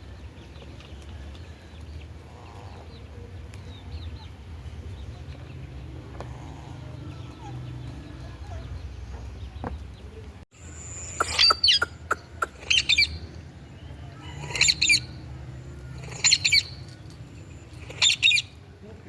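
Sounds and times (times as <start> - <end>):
parakeet screeching: 14.2 - 15.1, 16.0 - 16.8.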